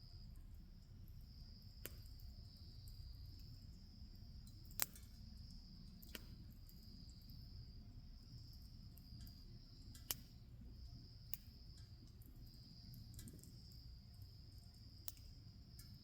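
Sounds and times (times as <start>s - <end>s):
high insect trill: 0.0s - 16.0s
wood fire crackling: 0.4s - 16.0s
sharp pops of fire: 1.8s - 2.4s, 4.4s - 5.3s, 6.0s - 6.8s, 9.0s - 10.4s, 11.3s - 13.8s, 15.0s - 16.0s.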